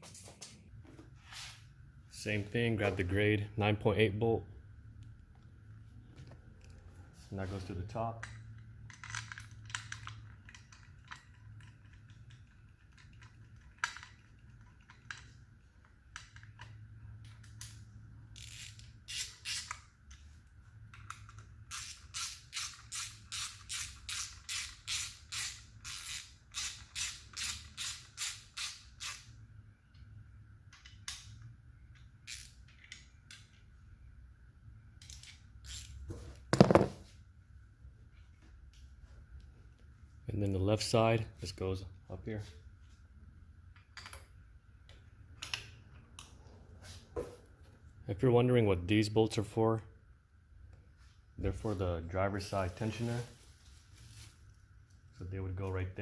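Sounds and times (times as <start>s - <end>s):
tools and hardware clicking: 8.2s - 20.2s, 20.9s - 29.3s
ratchet pawl clicking: 18.3s - 19.9s, 21.7s - 29.3s.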